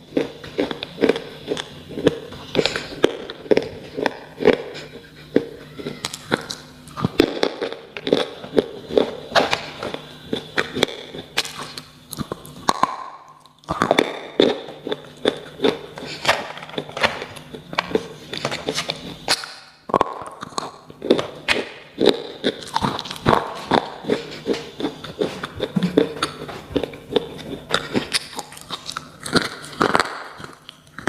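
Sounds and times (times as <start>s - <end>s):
crunching and chewing: 0.0s - 31.0s.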